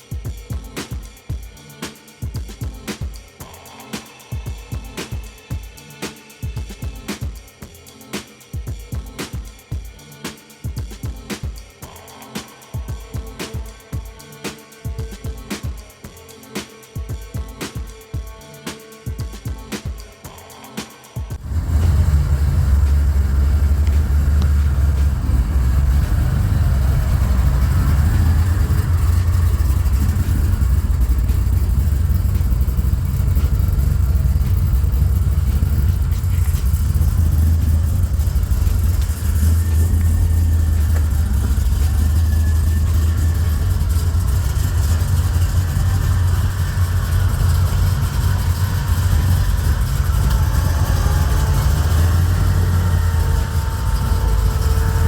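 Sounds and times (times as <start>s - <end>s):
car engine running: 21.4s - 55.0s.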